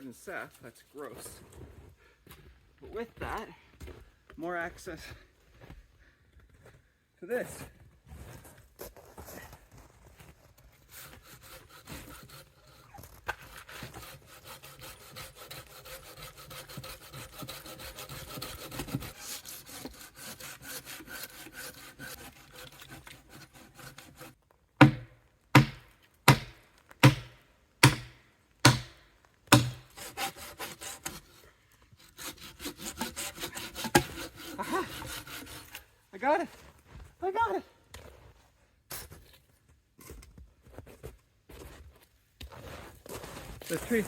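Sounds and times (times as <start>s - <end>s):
handsaw cutting wood: 10.8s - 35.9s
loud knocks: 24.8s - 29.8s.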